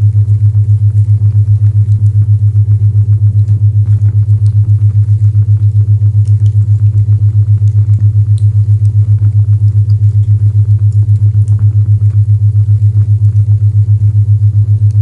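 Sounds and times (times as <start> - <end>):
pulsing deep hum tone: 0.0 - 15.0
faint fireplace crackles: 3.4 - 13.4.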